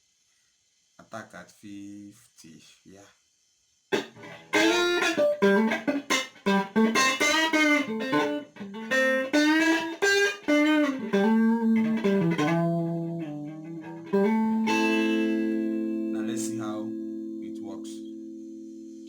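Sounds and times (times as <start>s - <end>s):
electric guitar notes with string bends: 4.0s - 19.0s.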